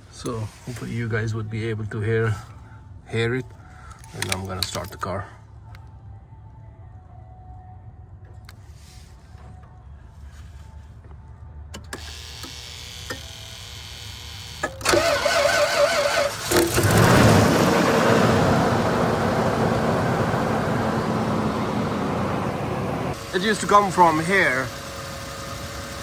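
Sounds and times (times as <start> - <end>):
starter motor cranking: 12.0 - 26.0
engine fast idle: 14.8 - 26.0.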